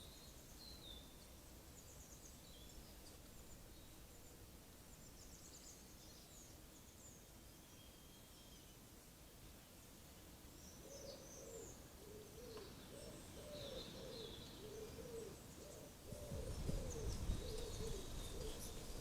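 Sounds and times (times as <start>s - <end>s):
small birds chirping: 0.0s - 8.8s, 10.5s - 19.0s
pigeon cooing: 11.0s - 18.8s.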